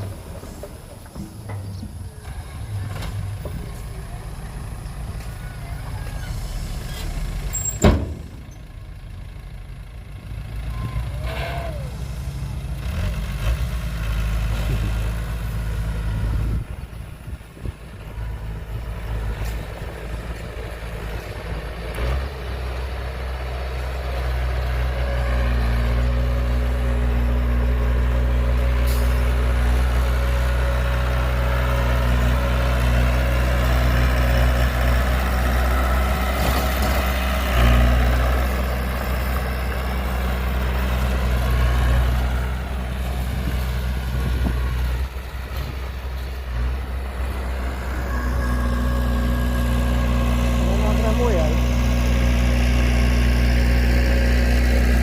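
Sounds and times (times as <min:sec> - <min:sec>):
heavy diesel engine droning: 0:00.0 - 0:55.0.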